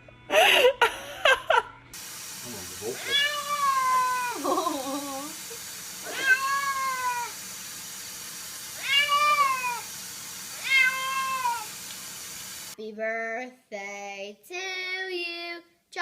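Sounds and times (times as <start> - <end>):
cat meowing: 3.0 - 4.4, 6.0 - 7.4, 8.8 - 9.9, 10.6 - 11.7.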